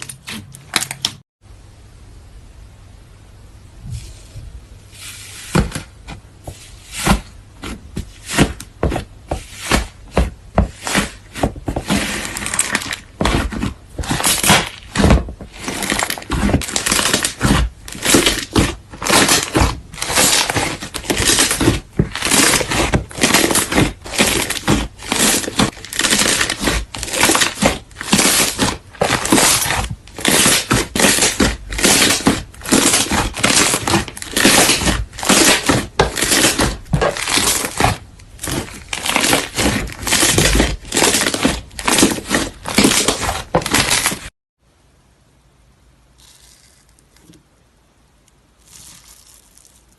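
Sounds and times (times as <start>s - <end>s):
slime squished by hand: 10.7s - 44.2s.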